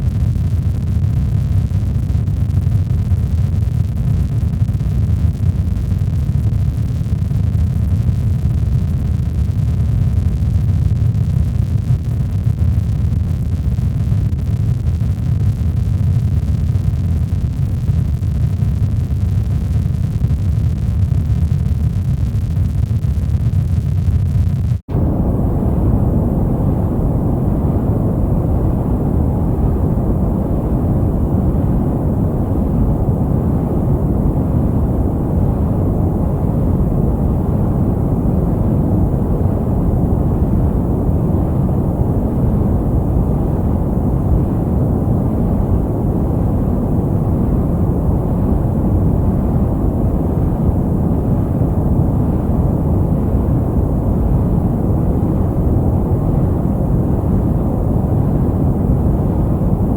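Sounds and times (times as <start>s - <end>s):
low rushing white noise: 24.9s - 59.9s.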